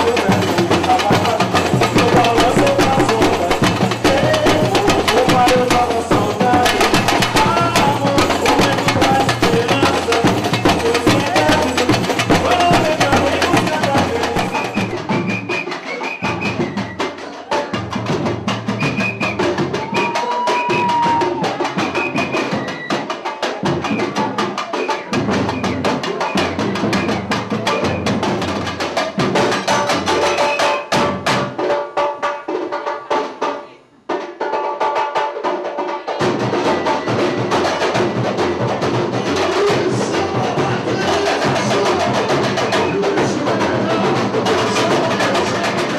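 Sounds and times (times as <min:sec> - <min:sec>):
samba percussion drum rhythm: 0:00.0 - 0:45.9.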